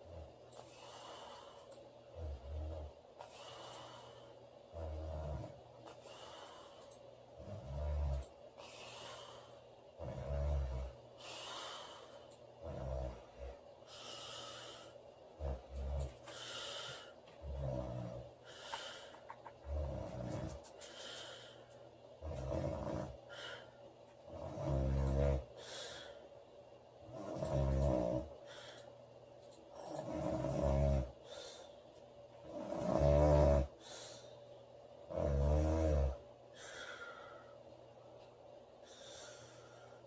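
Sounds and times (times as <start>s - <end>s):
person snoring: 0.0s - 6.7s, 7.4s - 19.0s, 19.6s - 20.6s, 22.2s - 23.7s, 24.3s - 26.1s, 27.0s - 28.4s, 29.8s - 31.7s, 32.4s - 34.2s, 35.1s - 37.5s
airy breath: 13.8s - 15.0s, 36.5s - 37.7s, 38.8s - 40.0s.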